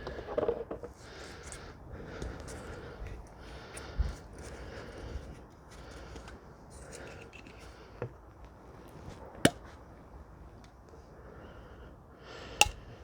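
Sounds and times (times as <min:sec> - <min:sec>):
sharp clicks of parts: 0:12.6 - 0:12.8.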